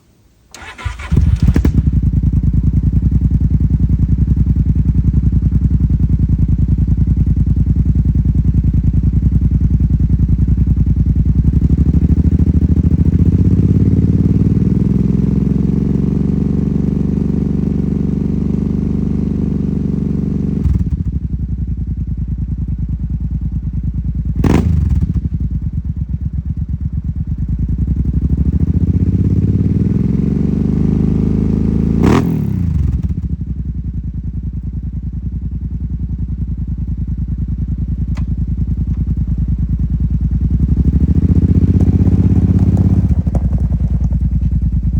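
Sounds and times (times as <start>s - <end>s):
atv engine idling: 0.5s - 44.9s.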